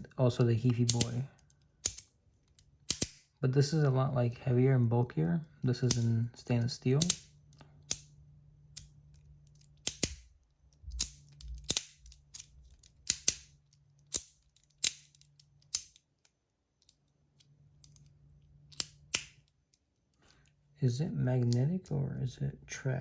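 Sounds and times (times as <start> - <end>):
metal fidget toy clicking: 0.7 - 2.1, 2.9 - 3.2, 7.0 - 7.3.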